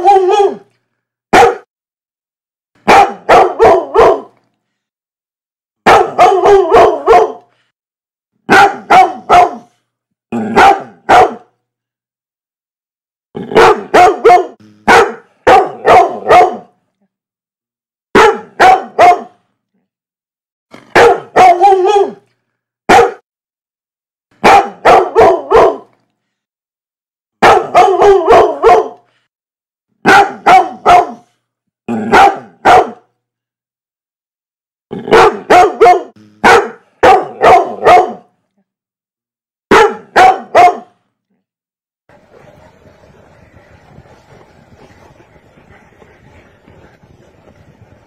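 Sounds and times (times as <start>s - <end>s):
dog barking: 0.0s - 0.7s, 1.3s - 1.7s, 2.8s - 4.4s, 5.8s - 7.5s, 8.5s - 9.8s, 10.4s - 11.5s, 13.5s - 16.8s, 18.1s - 19.4s, 20.9s - 22.2s, 22.9s - 23.2s, 24.4s - 25.9s, 27.4s - 29.1s, 30.0s - 31.3s, 32.0s - 33.1s, 35.0s - 38.3s, 39.7s - 41.0s.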